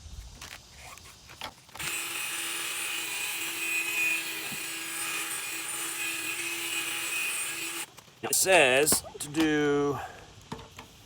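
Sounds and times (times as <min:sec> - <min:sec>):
drill spinning polishing pad: 0:01.8 - 0:07.9.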